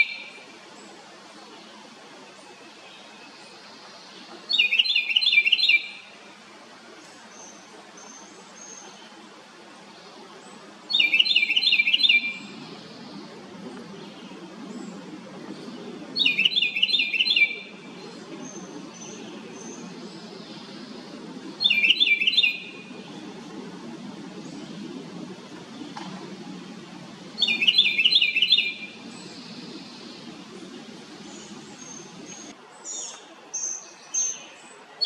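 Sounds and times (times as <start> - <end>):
wren singing: 10.9 - 13.2, 14.0 - 23.3, 27.3 - 34.7.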